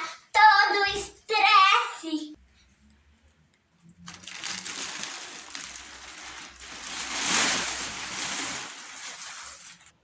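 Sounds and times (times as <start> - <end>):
bubble wrap crinkling: 4.0 - 10.0.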